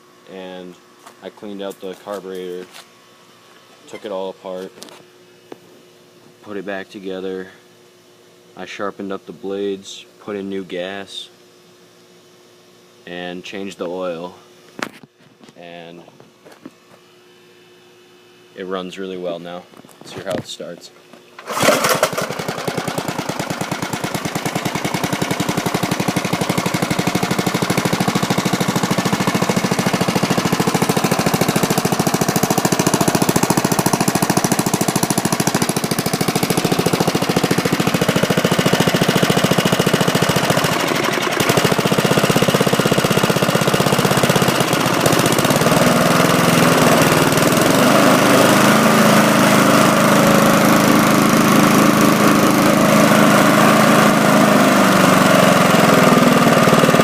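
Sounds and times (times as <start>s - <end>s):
lawn mower engine chugging: 21.1s - 57.0s.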